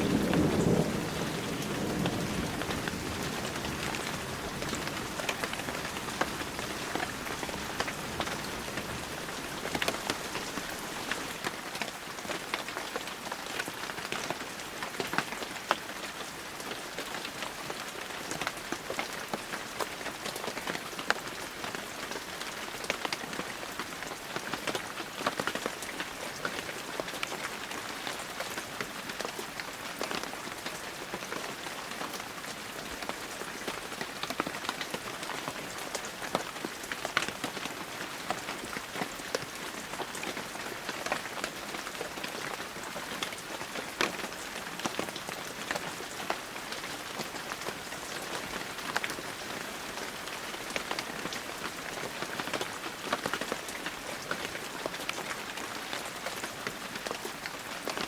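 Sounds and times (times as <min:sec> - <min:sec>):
heavy rain falling: 0:00.0 - 0:15.5, 0:27.8 - 0:58.0.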